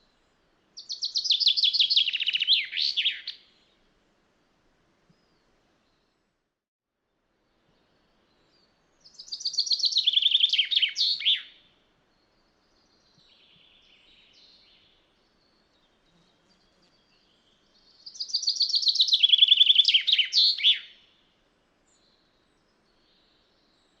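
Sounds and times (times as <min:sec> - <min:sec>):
chaffinch singing: 0:00.8 - 0:03.5, 0:09.0 - 0:11.6, 0:12.6 - 0:21.1.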